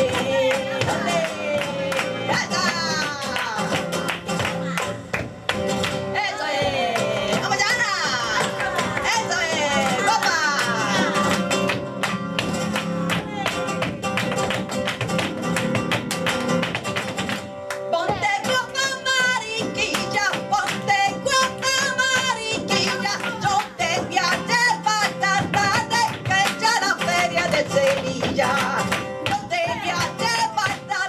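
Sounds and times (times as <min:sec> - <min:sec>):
person singing: 0:00.0 - 0:04.9, 0:06.2 - 0:12.0, 0:17.9 - 0:31.0
flamenco guitar: 0:00.0 - 0:31.0.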